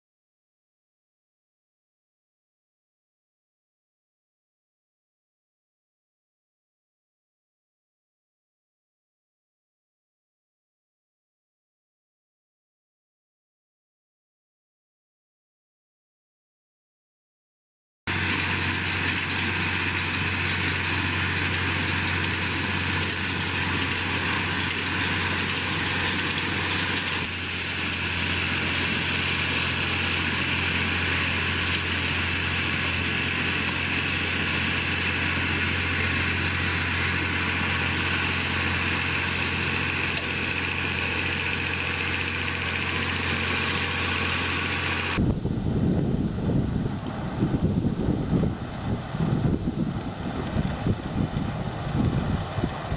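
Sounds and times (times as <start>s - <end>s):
tractor engine running: 18.1s - 45.4s
rough low rumble: 41.7s - 52.9s.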